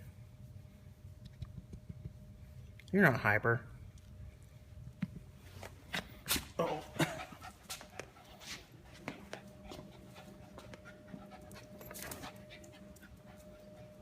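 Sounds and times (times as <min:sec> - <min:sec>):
puppy panting: 0:06.7 - 0:14.0.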